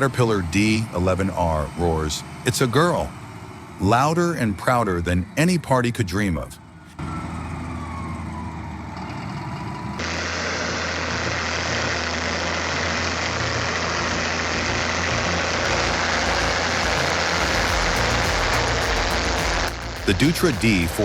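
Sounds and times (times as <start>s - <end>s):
diesel engine revving: 0.0s - 21.0s.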